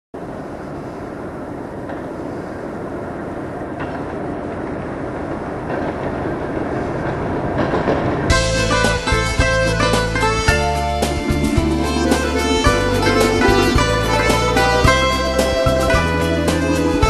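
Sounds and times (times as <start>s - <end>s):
train rumbling on rails: 0.2s - 17.0s
music: 8.3s - 17.0s.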